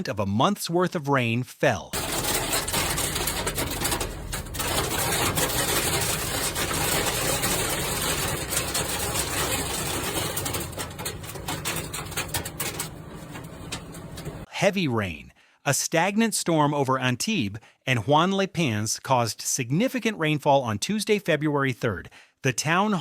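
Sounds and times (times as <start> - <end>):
hail and heavy rain pelting: 2.0 - 14.5.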